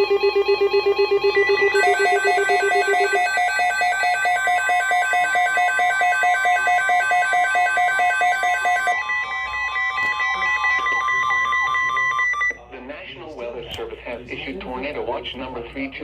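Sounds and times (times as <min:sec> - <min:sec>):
rapid electronic beeping: 0:00.0 - 0:12.6
steady alert tone: 0:00.0 - 0:12.6.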